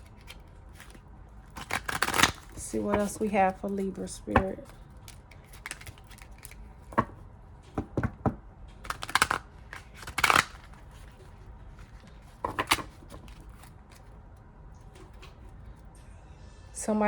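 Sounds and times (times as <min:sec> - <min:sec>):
cards riffling: 0:00.0 - 0:07.1, 0:08.8 - 0:14.2
cards tapping and flicking: 0:07.7 - 0:11.2, 0:11.8 - 0:14.1.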